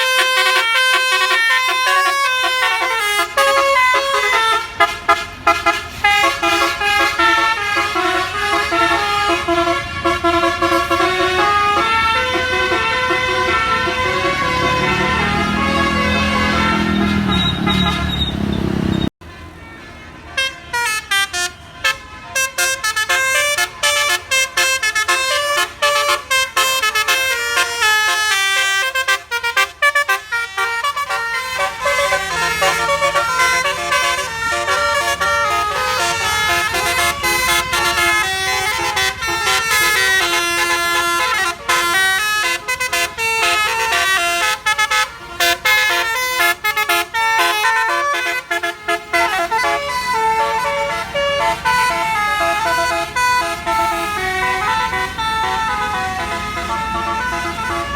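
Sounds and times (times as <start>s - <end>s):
multi-tone musical bus horn: 0.0s - 57.9s.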